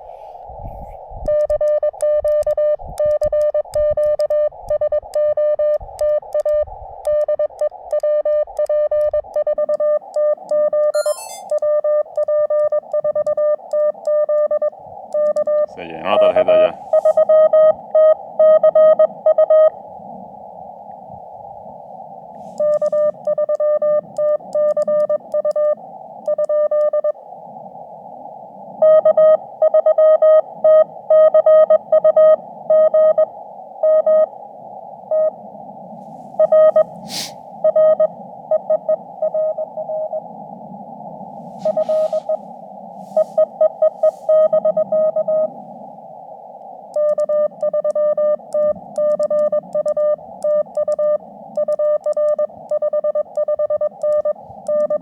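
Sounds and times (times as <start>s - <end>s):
receiver hiss: 9.2s - 17.6s, 19.8s - 29.8s, 33.4s - 55.0s
morse code tone: 11.0s - 11.6s, 41.6s - 42.4s, 47.0s - 55.0s.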